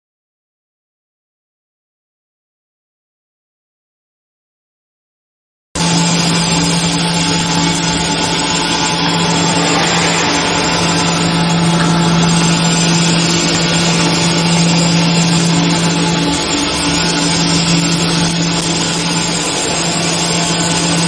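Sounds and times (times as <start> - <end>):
machinery running: 5.8 - 21.0.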